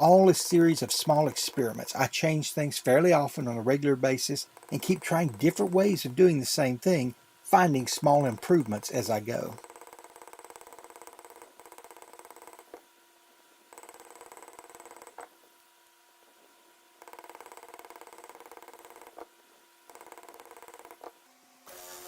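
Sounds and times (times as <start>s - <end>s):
louder steady machine: 0.0s - 12.8s, 19.9s - 22.0s
small motor running in bursts: 2.7s - 12.8s, 13.5s - 15.6s, 16.3s - 22.0s.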